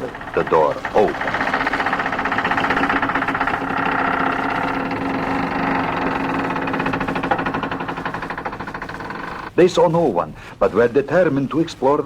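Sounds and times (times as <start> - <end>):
door creaking open: 0.0 - 9.6.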